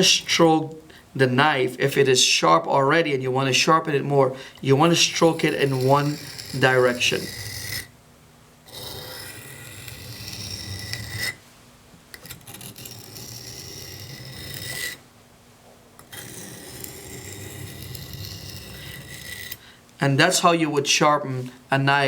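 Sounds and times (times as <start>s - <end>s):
knife scraping on sharpening stone: 5.3s - 7.9s, 8.7s - 11.4s, 12.2s - 15.0s, 16.0s - 19.6s.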